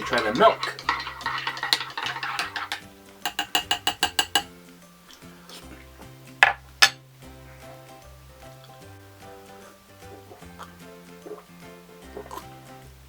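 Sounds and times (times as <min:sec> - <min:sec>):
spoon clinking in a cup: 0:00.0 - 0:04.5, 0:06.4 - 0:07.0
background music: 0:00.0 - 0:13.0.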